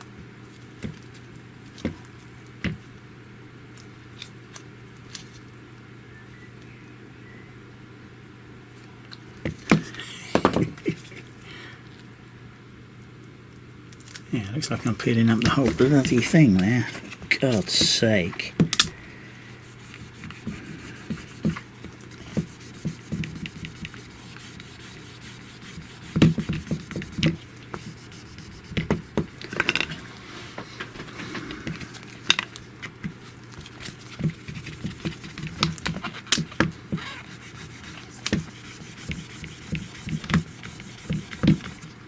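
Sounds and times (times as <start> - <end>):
rubbing scrapes: 19.6 - 29.4, 37.0 - 41.9.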